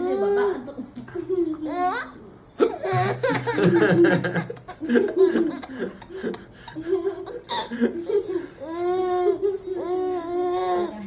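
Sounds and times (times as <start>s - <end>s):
adult laughing: 2.6s - 8.5s.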